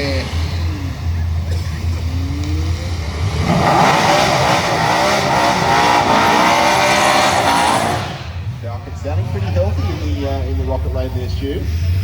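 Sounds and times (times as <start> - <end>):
car engine revving: 0.0 - 12.0.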